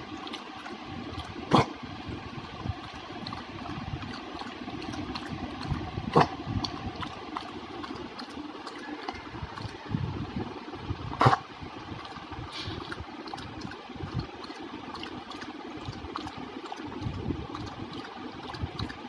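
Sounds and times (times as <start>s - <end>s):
steady background hum: 0.0s - 19.0s
dog giving low oof: 1.1s - 1.9s, 3.2s - 9.8s.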